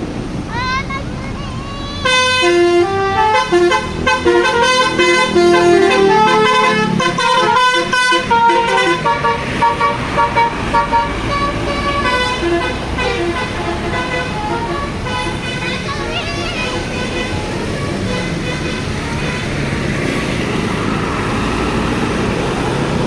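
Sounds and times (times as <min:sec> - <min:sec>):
bus engine rumble: 0:00.0 - 0:23.0
musical air horns playing tune: 0:02.0 - 0:20.4.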